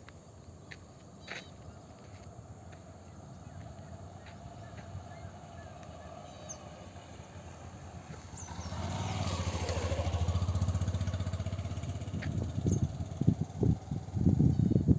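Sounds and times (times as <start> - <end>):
faint bird chirps: 1.2 - 2.0
small engine vehicle passing: 1.7 - 14.9.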